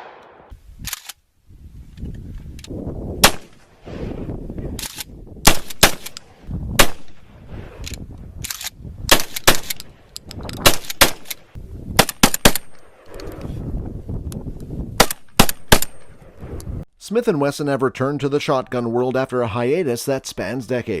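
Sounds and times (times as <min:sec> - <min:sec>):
gunshots: 0:00.0 - 0:00.5, 0:03.2 - 0:03.6, 0:05.4 - 0:06.2, 0:06.8 - 0:07.2, 0:09.1 - 0:09.8, 0:10.6 - 0:11.4, 0:15.0 - 0:16.1.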